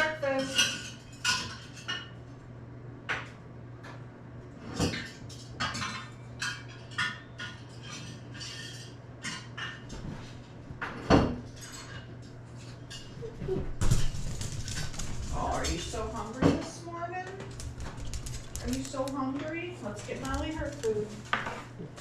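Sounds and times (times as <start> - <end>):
dishes and utensils clattering: 0.0 - 2.2, 4.6 - 16.7
faint low hum: 12.6 - 22.0.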